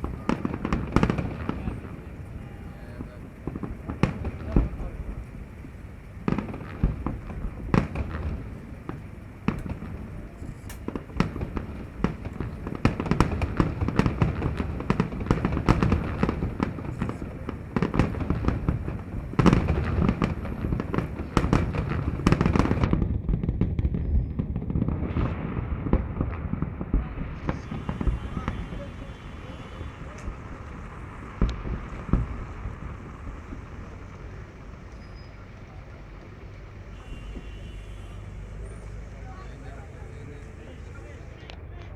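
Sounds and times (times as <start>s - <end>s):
fireworks bangs and crackles: 0.0s - 41.9s
low rumble: 16.4s - 37.6s.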